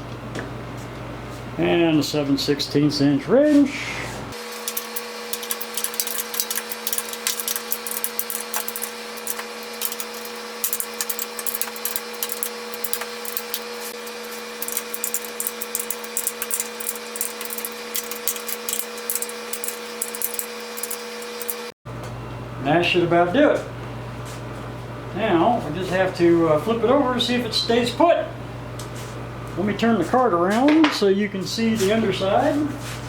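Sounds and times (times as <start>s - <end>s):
air conditioner hum: 0.0s - 33.0s
wrench clicking on bolts: 4.6s - 21.6s.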